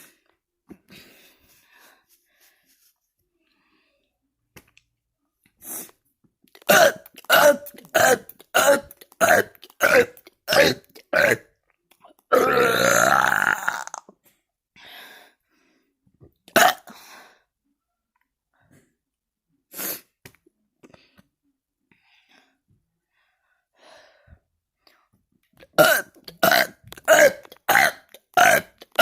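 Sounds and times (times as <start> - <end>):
person burping: 6.6 - 11.5, 12.3 - 14.1, 16.5 - 16.9, 25.6 - 29.0.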